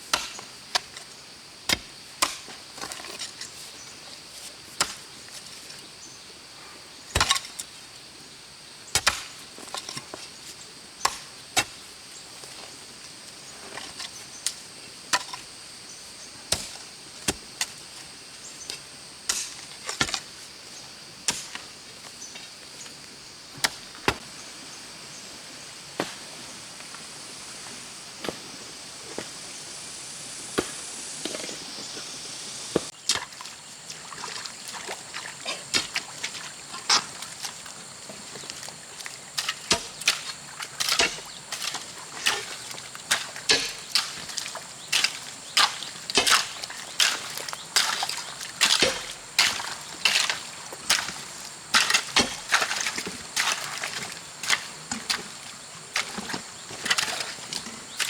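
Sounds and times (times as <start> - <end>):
hoe striking soil: 0.0 - 1.1, 1.7 - 3.6, 4.8 - 5.2, 7.2 - 7.8, 9.0 - 10.2, 11.0 - 11.8, 13.6 - 15.5, 16.5 - 17.8, 18.7 - 20.4, 21.3 - 22.4, 35.0 - 58.0.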